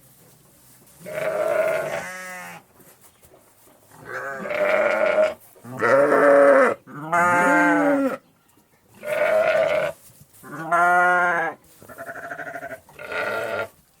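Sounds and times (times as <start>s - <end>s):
sheep bleating: 1.0s - 2.6s, 4.0s - 8.2s, 9.0s - 13.8s.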